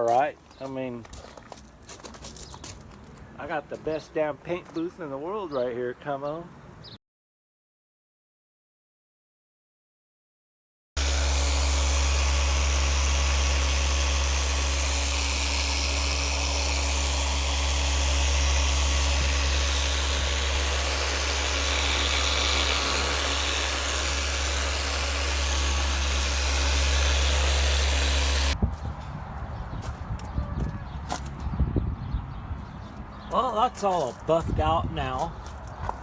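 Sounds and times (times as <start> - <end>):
machine humming and hissing: 11.0 - 28.6.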